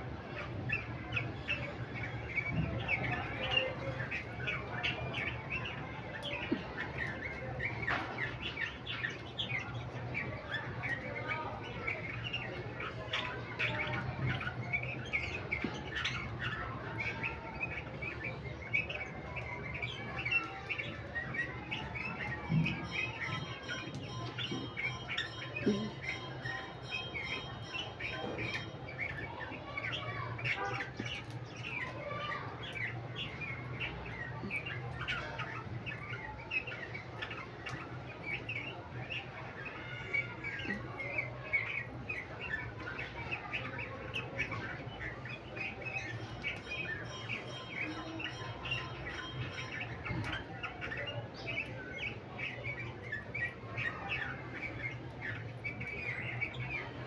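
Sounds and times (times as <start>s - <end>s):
lovebird chirping: 17.2s - 39.2s, 39.8s - 56.9s.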